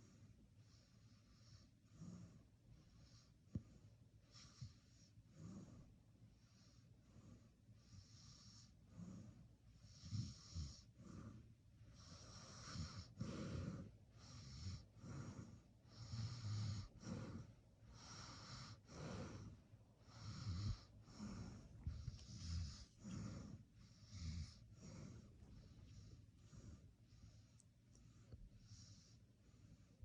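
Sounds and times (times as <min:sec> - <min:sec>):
person snoring: 0:12.0 - 0:26.7.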